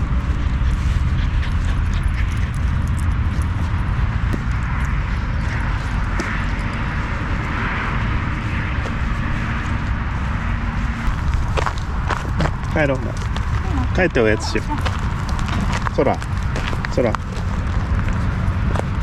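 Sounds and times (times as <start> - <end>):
wind rumble on microphone: 0.0 - 19.0
footsteps crunching on trail: 8.6 - 19.0.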